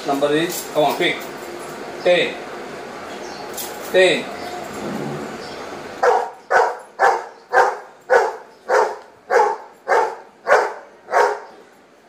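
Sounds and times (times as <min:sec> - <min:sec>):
dog barking: 0:06.0 - 0:11.6.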